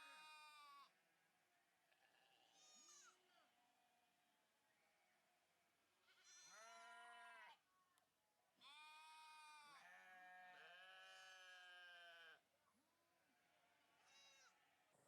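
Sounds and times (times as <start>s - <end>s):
sheep bleating: 0.0s - 1.0s, 1.9s - 4.0s, 6.0s - 7.6s, 8.6s - 12.4s, 13.2s - 14.8s.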